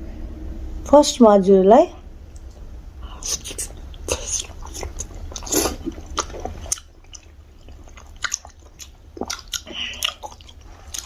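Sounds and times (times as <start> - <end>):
biting into dumplings: 3.2 - 11.0
wet chewing and smacking: 3.2 - 11.0.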